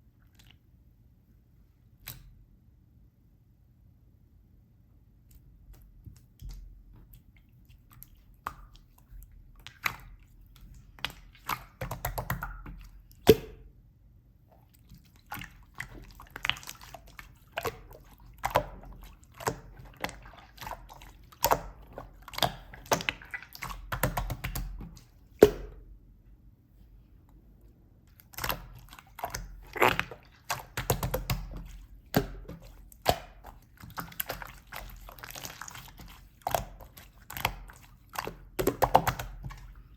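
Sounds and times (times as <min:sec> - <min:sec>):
slime squishing by hand: 0:05.3 - 0:13.8, 0:14.5 - 0:26.0, 0:28.0 - 0:39.9.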